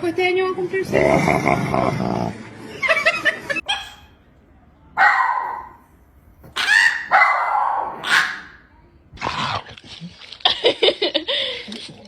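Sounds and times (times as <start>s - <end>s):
dog barking and yowling: 6.6s - 8.6s.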